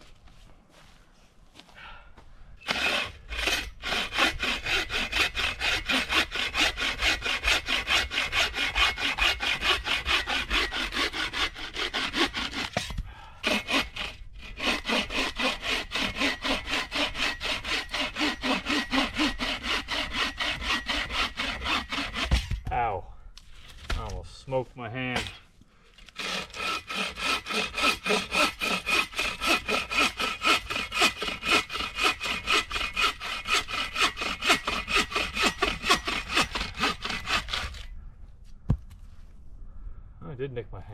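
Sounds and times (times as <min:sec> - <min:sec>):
hand saw cutting wood: 0:02.6 - 0:22.6, 0:25.1 - 0:25.4, 0:26.0 - 0:37.9.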